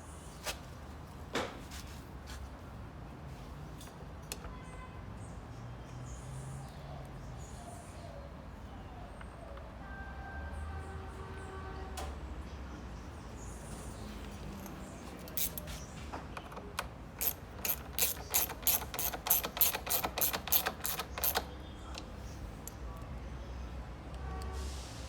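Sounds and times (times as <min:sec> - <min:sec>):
hand ratchet clicking: 0:14.6 - 0:15.8, 0:16.4 - 0:21.5.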